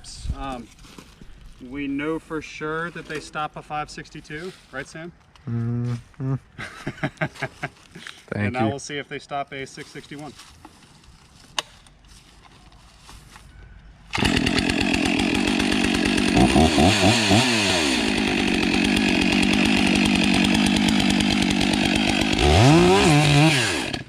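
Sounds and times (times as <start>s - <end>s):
chainsaw running at full throttle: 14.1s - 24.0s.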